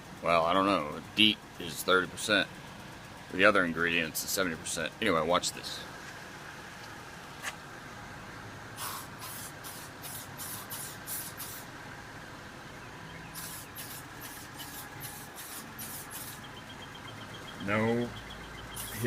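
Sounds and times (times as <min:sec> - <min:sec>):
insect repellent spray squirts: 0:08.8 - 0:11.7, 0:13.4 - 0:16.4, 0:18.8 - 0:19.0.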